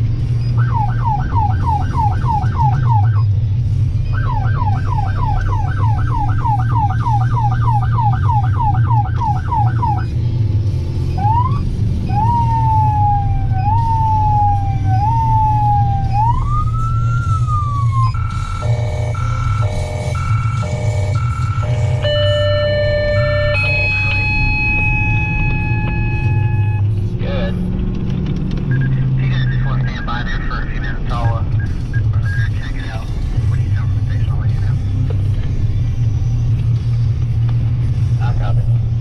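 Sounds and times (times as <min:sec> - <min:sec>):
engine and road rumble: 0:00.0 - 0:39.0
electronic siren: 0:00.3 - 0:03.4, 0:04.0 - 0:10.2, 0:11.1 - 0:27.0.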